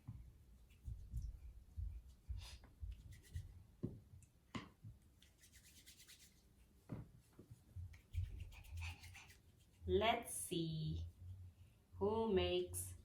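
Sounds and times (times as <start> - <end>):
hands rubbing modelling clay: 0.3 - 3.8, 5.0 - 10.0.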